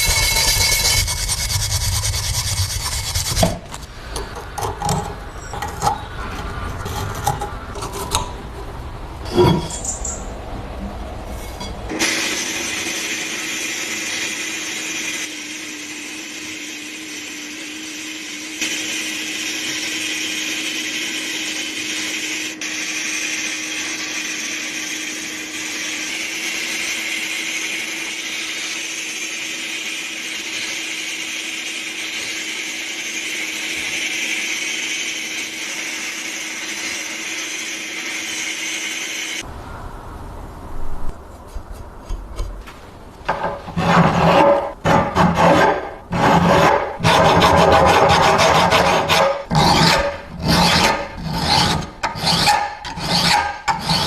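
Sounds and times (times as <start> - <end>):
electric power tool running: 11.9 - 39.4.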